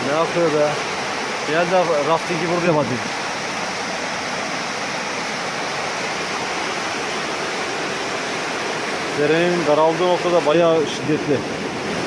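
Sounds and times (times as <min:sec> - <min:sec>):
whitewater river rushing: 0:00.0 - 0:12.0.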